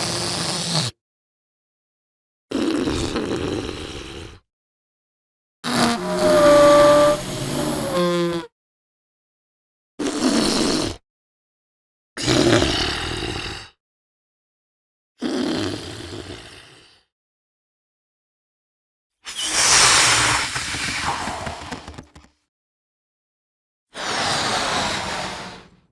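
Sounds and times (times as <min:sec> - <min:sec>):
air rushing from balloon: 0:05.7 - 0:08.5
squeaky balloon whine: 0:05.7 - 0:08.5.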